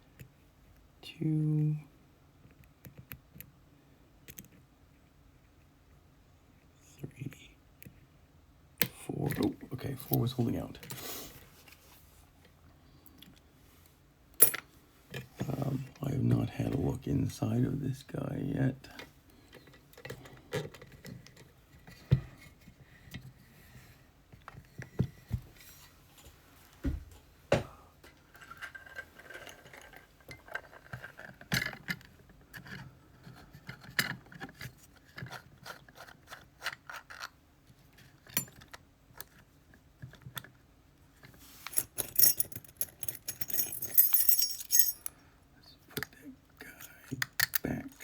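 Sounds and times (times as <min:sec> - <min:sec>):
metal clicks of lock-picking tools: 0:41.7 - 0:45.1, 0:47.2 - 0:47.6
metallic jingling and clinking: 0:41.7 - 0:45.1.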